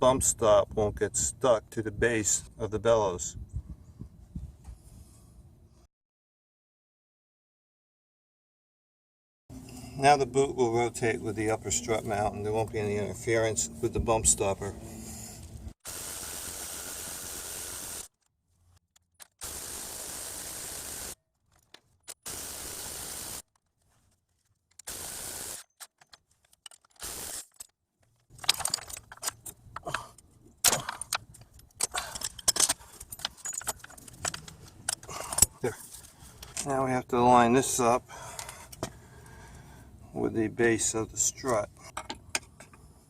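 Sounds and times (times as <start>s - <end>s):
light metallic clinks and rattles: 25.8s - 36.7s.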